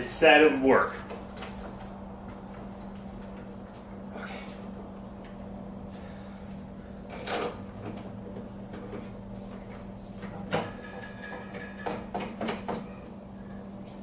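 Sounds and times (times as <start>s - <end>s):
steady low hum: 0.0s - 14.0s
welding equipment knocks and rattles: 10.2s - 12.9s.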